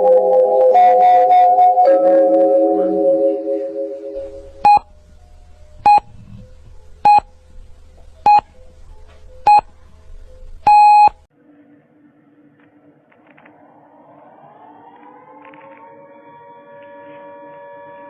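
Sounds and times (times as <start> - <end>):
low hum: 4.0 - 11.2
short electronic beeps: 4.2 - 4.9, 5.8 - 6.2, 7.0 - 7.3, 8.2 - 8.5, 9.5 - 9.7, 10.6 - 11.2.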